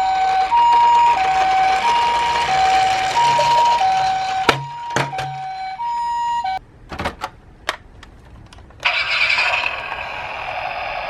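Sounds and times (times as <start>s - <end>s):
two-note ambulance siren: 0.0s - 6.6s.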